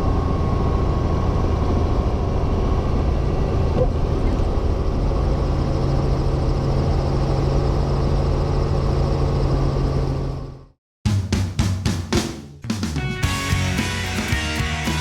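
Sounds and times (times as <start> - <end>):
helicopter engine and rotor drone: 0.0 - 10.8.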